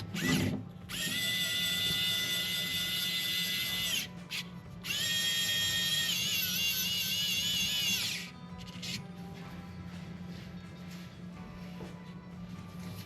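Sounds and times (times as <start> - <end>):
electric screwdriver motor whine: 0.0 - 9.0.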